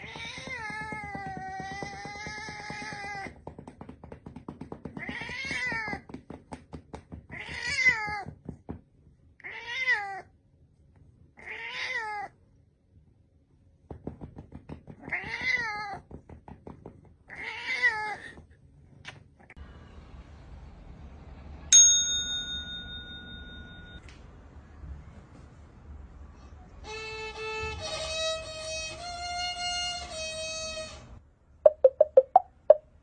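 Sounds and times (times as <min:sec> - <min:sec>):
cat meowing: 0:09.4 - 0:10.3, 0:11.4 - 0:12.4, 0:17.3 - 0:18.4.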